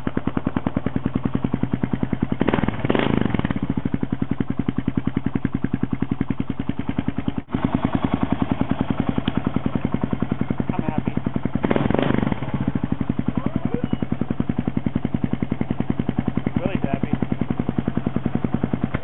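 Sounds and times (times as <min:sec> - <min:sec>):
motorcycle engine idling: 0:00.0 - 0:19.0
exhaust rush: 0:07.5 - 0:19.0.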